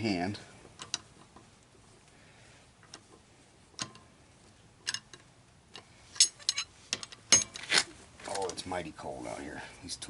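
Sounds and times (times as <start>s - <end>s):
metallic clicks and clinks: 6.2s - 7.6s.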